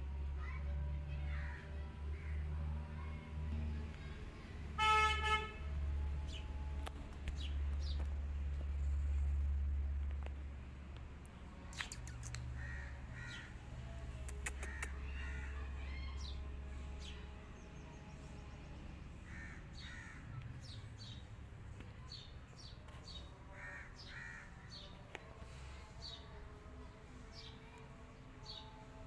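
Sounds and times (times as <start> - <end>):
birds harsh calls: 11.7 - 16.4, 19.2 - 21.2, 22.0 - 26.3.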